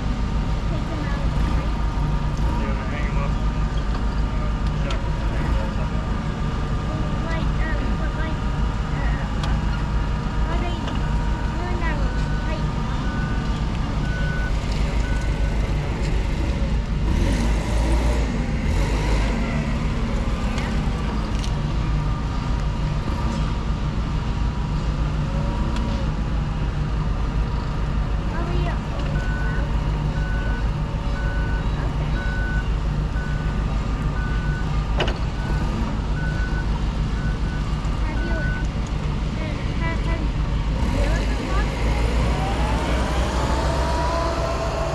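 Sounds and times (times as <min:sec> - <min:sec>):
forklift engine running: 0:00.0 - 0:44.9
reversing alarm beep: 0:12.0 - 0:15.5, 0:29.2 - 0:33.6, 0:35.4 - 0:38.7.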